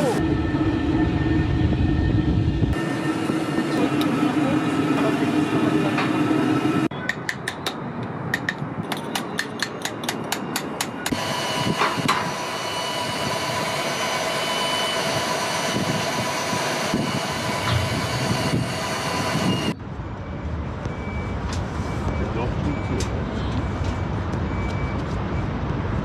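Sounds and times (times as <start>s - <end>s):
machinery humming: 0.0s - 6.9s, 11.0s - 19.8s.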